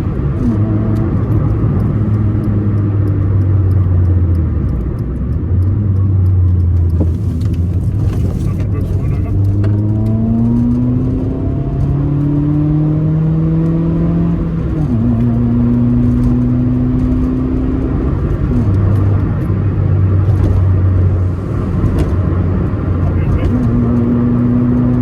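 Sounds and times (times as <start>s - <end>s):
car engine accelerating: 0.0s - 25.0s
road noise: 0.0s - 25.0s.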